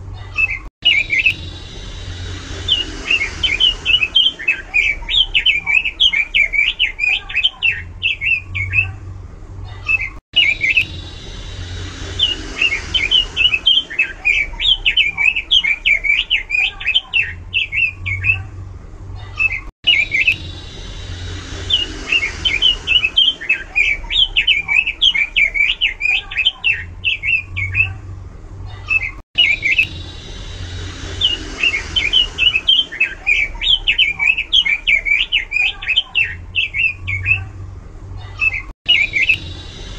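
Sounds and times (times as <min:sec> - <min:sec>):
bird warbling song: 0:00.3 - 0:09.0, 0:09.8 - 0:18.5, 0:19.4 - 0:28.0, 0:28.8 - 0:37.5, 0:38.4 - 0:39.9.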